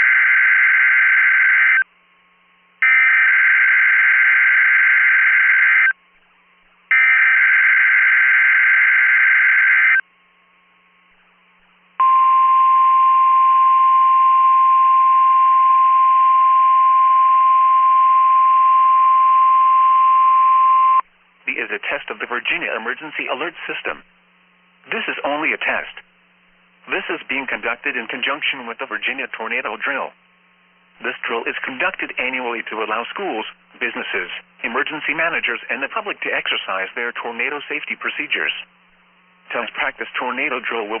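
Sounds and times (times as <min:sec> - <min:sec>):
steady high alarm tone: 0:00.0 - 0:01.8, 0:02.8 - 0:06.0, 0:06.9 - 0:10.0.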